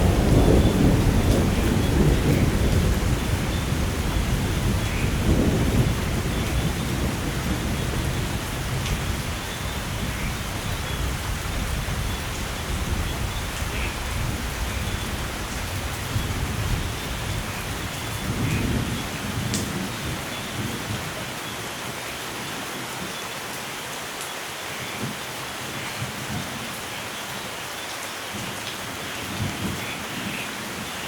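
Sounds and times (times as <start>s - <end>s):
thunder rumbling: 0.0s - 21.1s
steady rain: 0.0s - 31.0s.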